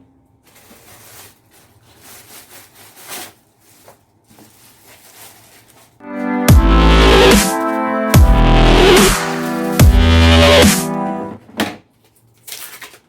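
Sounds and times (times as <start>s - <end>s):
packaging and cables rustling: 0.5s - 6.0s, 12.0s - 13.0s.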